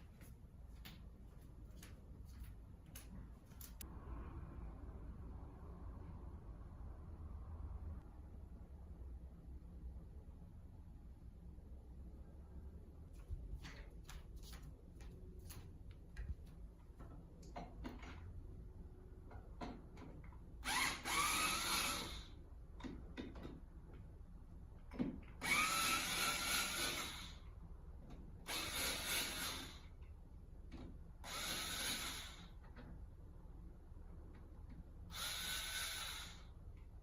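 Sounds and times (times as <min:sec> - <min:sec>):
electric drill spinning up: 0:20.6 - 0:22.3, 0:25.4 - 0:27.4, 0:28.5 - 0:29.9, 0:31.2 - 0:32.5, 0:35.1 - 0:36.5.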